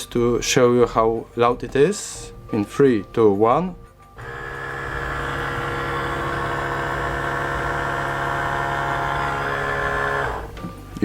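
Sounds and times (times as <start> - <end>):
electric pump motor humming: 4.2 - 10.7.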